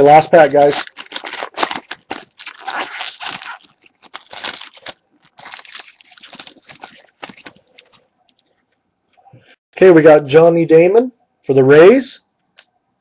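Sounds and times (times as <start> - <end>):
card pack wrapper tearing and crinkling: 0.0 - 8.0.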